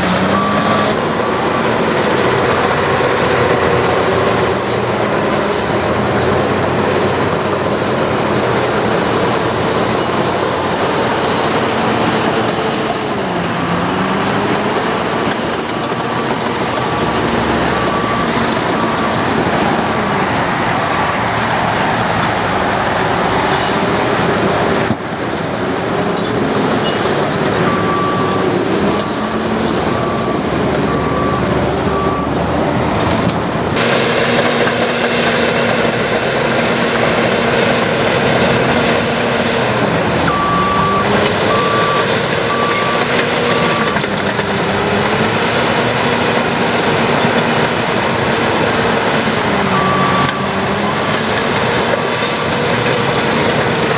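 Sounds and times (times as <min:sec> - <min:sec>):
heavy diesel machinery working: 0:00.0 - 0:53.9
reverse alarm beeping: 0:00.1 - 0:04.6, 0:13.7 - 0:19.8, 0:27.6 - 0:32.4, 0:40.3 - 0:52.0.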